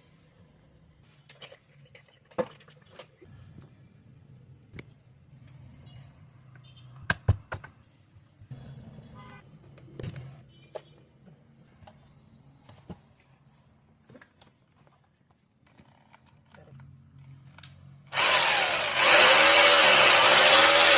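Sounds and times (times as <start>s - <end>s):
electric hammer drill running: 18.1s - 20.9s.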